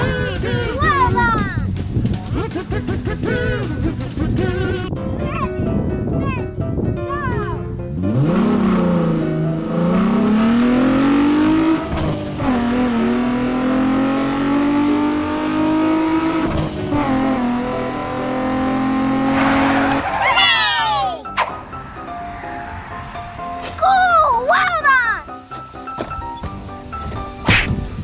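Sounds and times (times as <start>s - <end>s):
car engine accelerating: 7.9s - 24.6s
tyres squealing: 19.1s - 26.5s.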